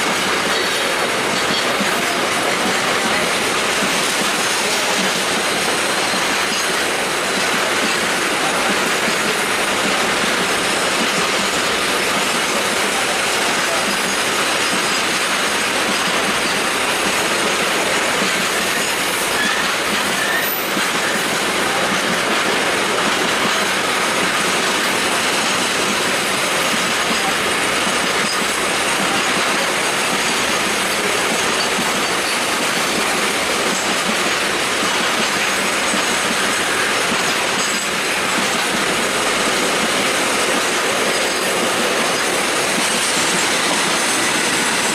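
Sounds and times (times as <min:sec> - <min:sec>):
train wheels on rails: 0:00.0 - 0:44.9.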